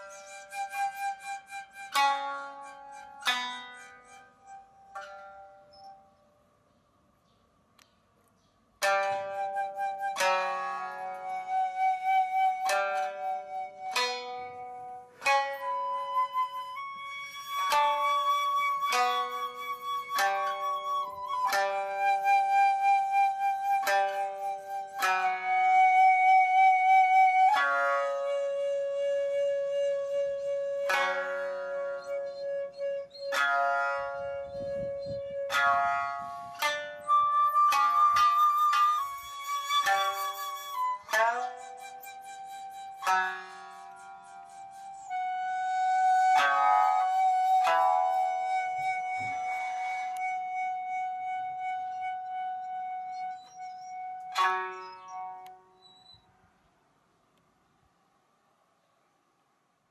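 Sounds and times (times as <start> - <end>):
bamboo flute long high note: 0.0 - 5.6, 9.0 - 55.7
shamisen plucked notes: 0.0 - 6.6, 8.7 - 56.1
plucked string strikes: 8.8 - 11.3, 33.3 - 42.2.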